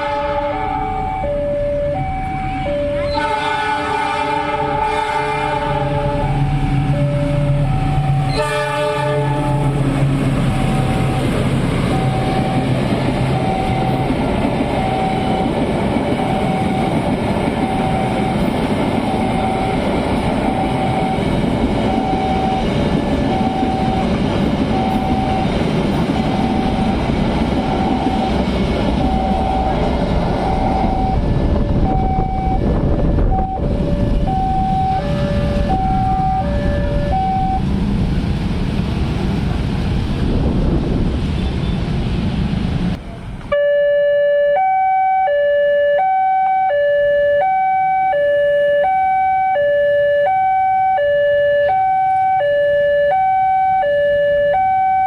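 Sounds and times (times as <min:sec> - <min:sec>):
locomotive horn: 0:00.0 - 0:01.3, 0:02.0 - 0:09.8, 0:43.5 - 0:55.0
train rumbling past: 0:00.0 - 0:43.6
level-crossing alarm dinging: 0:00.6 - 0:03.4, 0:06.0 - 0:09.0, 0:10.5 - 0:37.7, 0:43.5 - 0:55.0.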